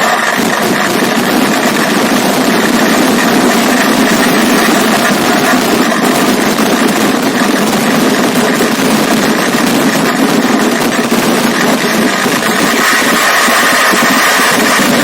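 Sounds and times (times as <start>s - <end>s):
firecracker barrage: 0.0s - 15.0s.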